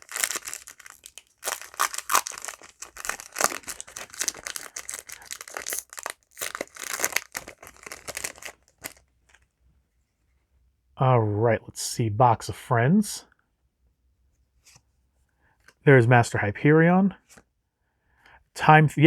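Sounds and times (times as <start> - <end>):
foil wrapper crinkling: 0.0 - 9.4.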